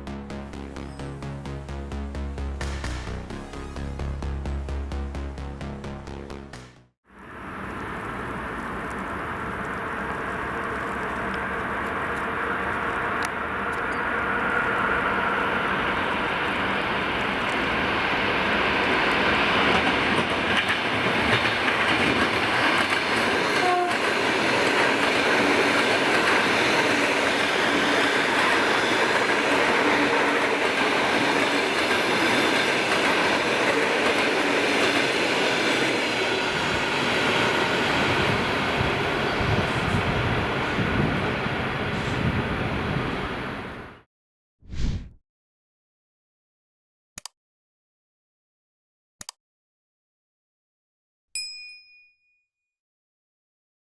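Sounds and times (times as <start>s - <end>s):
train wheels clattering on rails: 18.7s - 39.3s.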